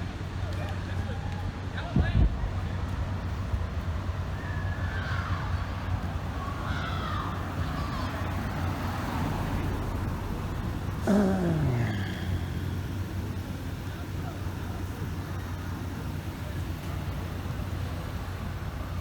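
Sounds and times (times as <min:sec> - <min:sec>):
city street traffic rumble: 0:00.0 - 0:19.0
faint distant voices: 0:04.4 - 0:19.0.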